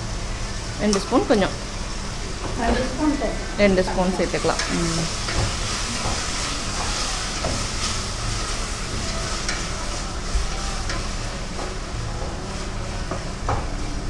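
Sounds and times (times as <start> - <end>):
masala sizzling in oil: 0.0 - 14.0.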